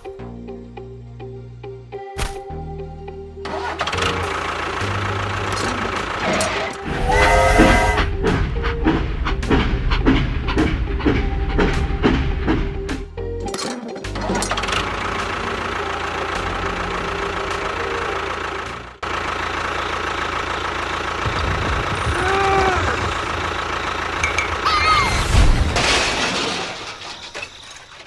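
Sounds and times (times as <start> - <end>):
engine running steadily: 3.4 - 13.1, 14.1 - 24.7.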